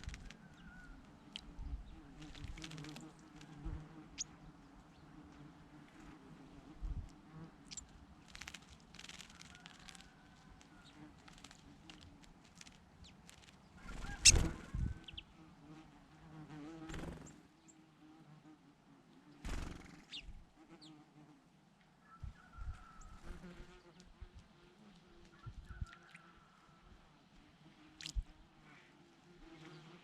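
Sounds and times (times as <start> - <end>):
insects buzzing: 0.0 - 18.6.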